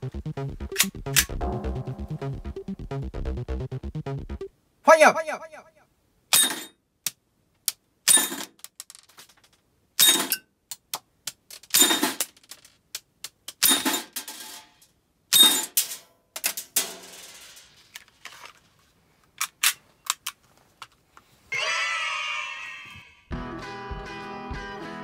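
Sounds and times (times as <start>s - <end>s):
metallic clicks and ticks: 0.5s - 1.4s.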